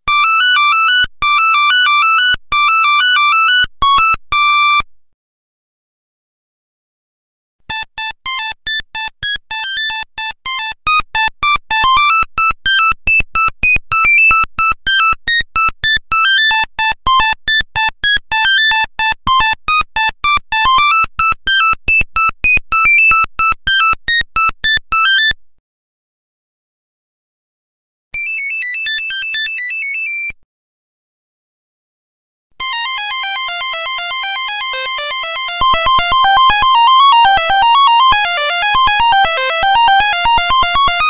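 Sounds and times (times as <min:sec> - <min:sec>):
monophonic phone ringtone: 0:28.2 - 0:30.3, 0:32.6 - 0:41.0.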